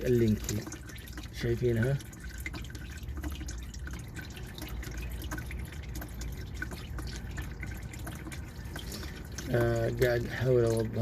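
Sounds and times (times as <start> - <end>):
low steady hum: 0.0 - 11.0
oil dripping into a pan: 0.0 - 11.0.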